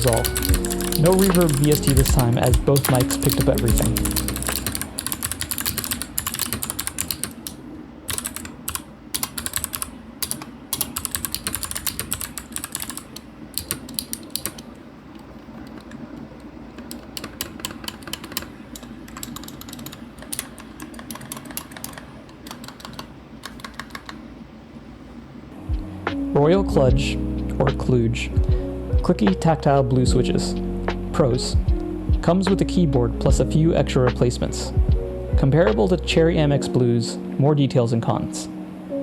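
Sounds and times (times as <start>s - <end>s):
mechanical keyboard key clicks: 0.0s - 14.6s, 16.8s - 24.2s
air conditioning blowing: 0.0s - 39.0s
ceiling fan hum: 0.0s - 39.0s.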